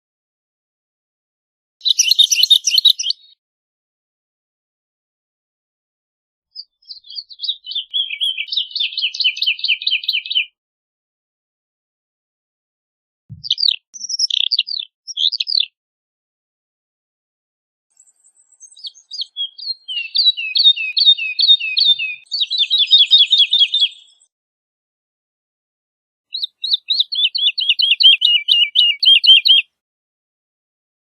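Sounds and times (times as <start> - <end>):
bird singing trills: 1.8 - 3.4, 6.6 - 10.5, 13.3 - 15.7, 18.0 - 24.3, 26.3 - 29.6.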